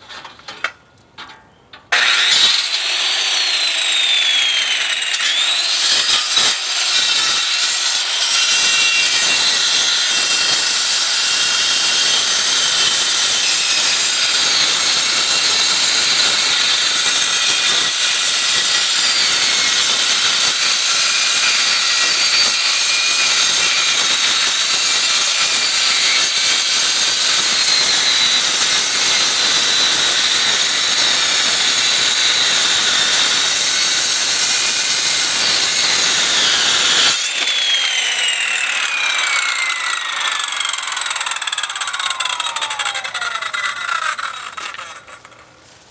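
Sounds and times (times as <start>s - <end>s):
circular saw cutting steel: 1.9s - 45.5s.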